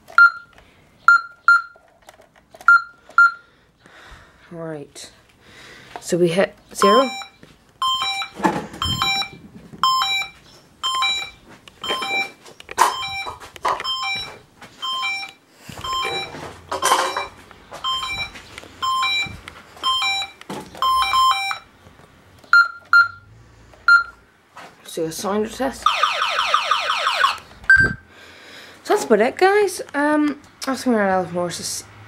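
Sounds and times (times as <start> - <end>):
keypad beeps: 0.1 - 1.8, 2.6 - 3.4, 6.8 - 21.7, 22.5 - 23.2, 23.9 - 24.2, 27.7 - 28.0.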